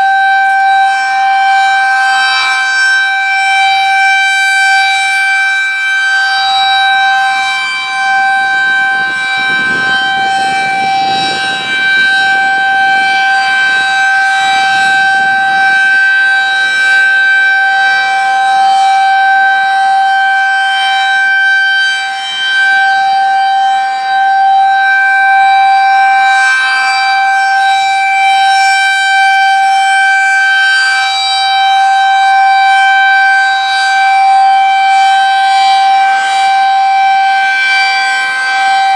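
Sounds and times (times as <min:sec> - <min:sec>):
rotating warning siren wail: 0:00.0 - 0:38.9.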